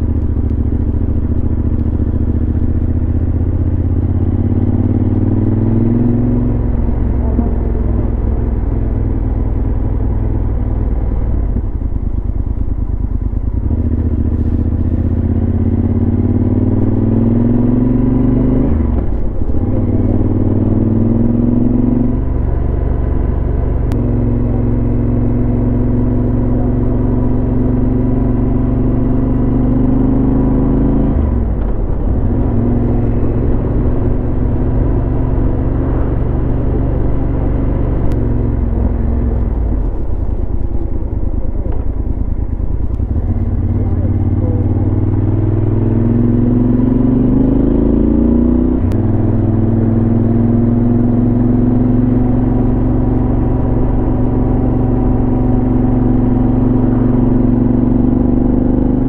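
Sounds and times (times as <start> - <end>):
motorcycle engine accelerating: 0.0 - 59.0.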